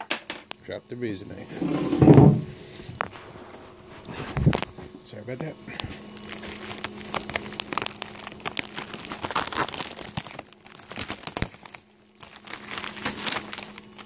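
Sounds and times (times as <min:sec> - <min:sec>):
packing material crumpling: 0:05.7 - 0:14.0.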